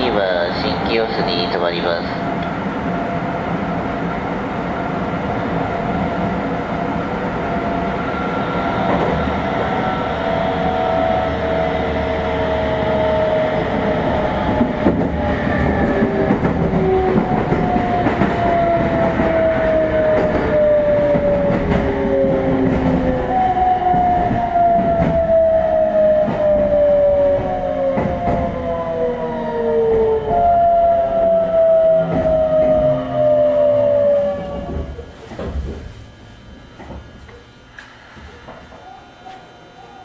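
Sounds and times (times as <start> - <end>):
train wheel rumble: 0.0 - 37.4
electric train motor whine: 5.6 - 35.0
rail joint clacks: 13.8 - 35.8.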